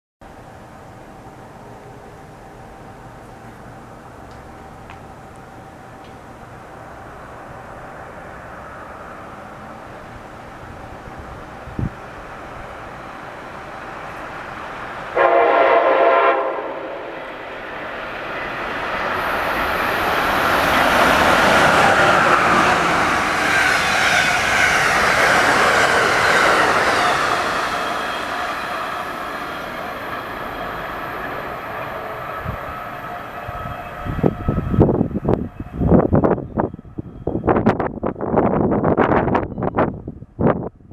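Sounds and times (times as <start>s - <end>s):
train wheels rushing on rails: 0.4s - 40.6s
locomotive horn blast: 15.1s - 17.2s.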